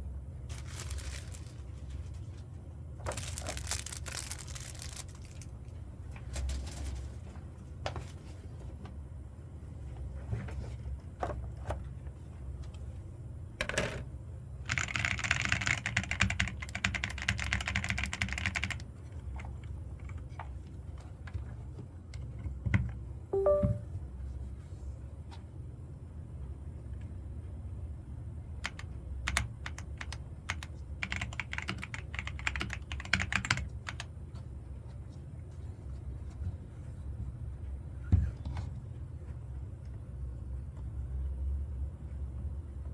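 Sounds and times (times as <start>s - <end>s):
mechanical keyboard typing: 14.7s - 18.9s, 28.6s - 34.1s.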